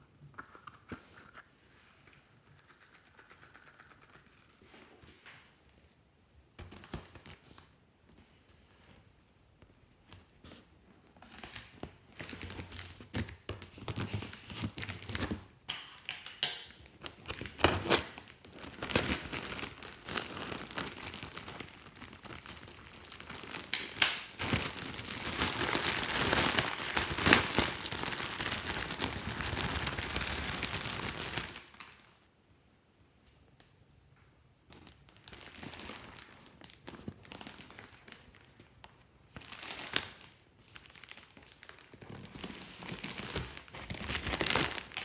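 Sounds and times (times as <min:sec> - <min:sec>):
slime crackling and popping: 0:17.1 - 0:32.0.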